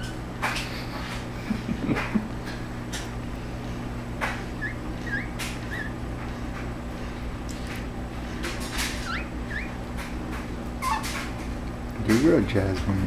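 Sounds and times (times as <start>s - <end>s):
steady low hum: 0.0s - 13.0s
puppy whimpering: 4.6s - 6.0s, 9.0s - 9.8s.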